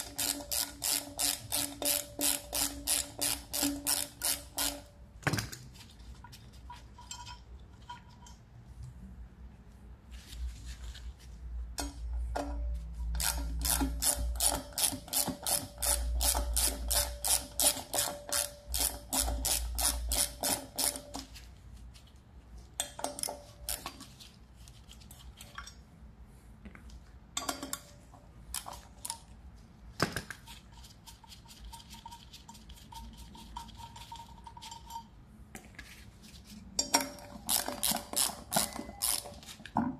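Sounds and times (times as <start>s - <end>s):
ratchet wrench clicking: 0.0s - 4.9s, 13.1s - 21.2s, 37.3s - 39.4s.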